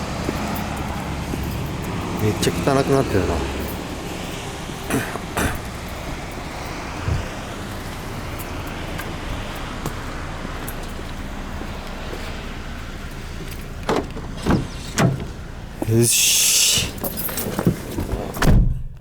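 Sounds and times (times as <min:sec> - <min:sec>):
car hum and hiss: 0:00.0 - 0:18.2.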